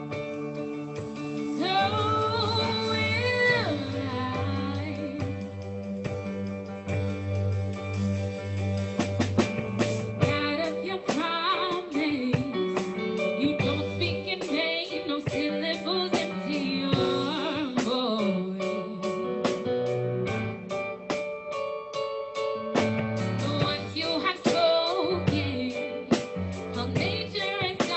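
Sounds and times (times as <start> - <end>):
band playing a song: 0.0 - 27.9
person singing: 1.0 - 5.9, 10.2 - 19.7, 23.4 - 27.9.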